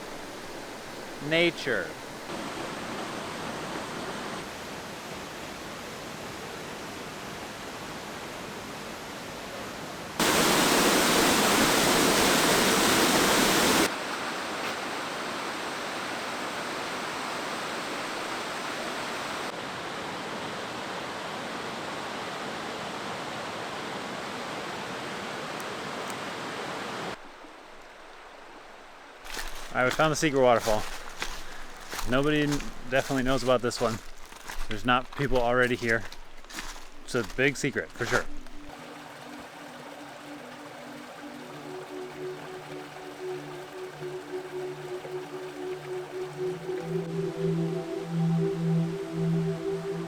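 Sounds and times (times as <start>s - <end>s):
waterfall rushing: 0.0s - 5.1s, 10.2s - 19.5s, 26.9s - 50.0s.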